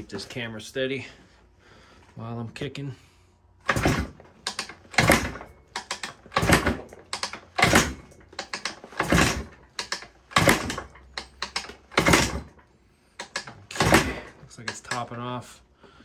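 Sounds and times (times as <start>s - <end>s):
engine kickstarter kicks: 3.6s - 15.1s.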